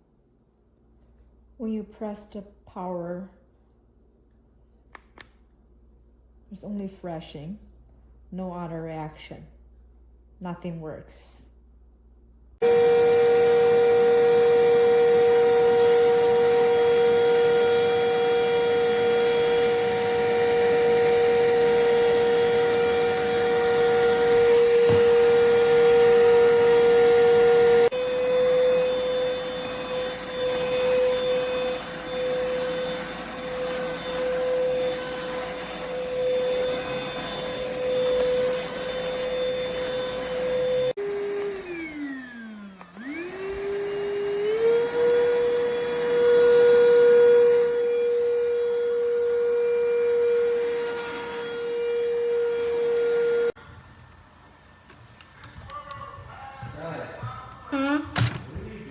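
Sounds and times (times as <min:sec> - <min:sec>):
vacuum motor high whine: 0:12.6 - 0:53.9.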